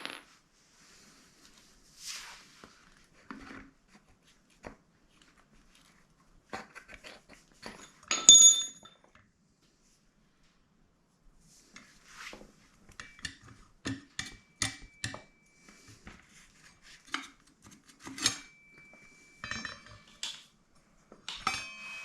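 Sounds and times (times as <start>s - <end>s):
metal tools clicking and knocking: 7.6s - 9.2s
ringing clink of metal on metal: 8.1s - 9.0s, 18.2s - 20.1s, 21.3s - 22.0s.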